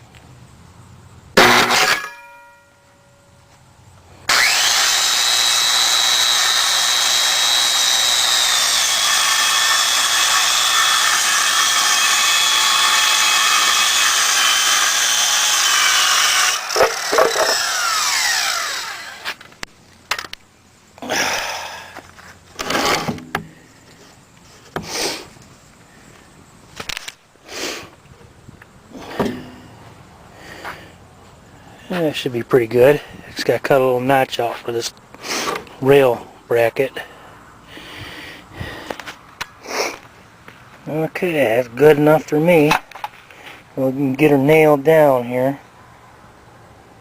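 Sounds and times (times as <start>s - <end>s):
electric saw cutting wood: 1.4s - 2.0s, 4.2s - 19.4s, 22.6s - 23.4s
wood knocks and clunks: 16.7s - 17.6s, 22.6s - 23.6s, 29.1s - 29.6s.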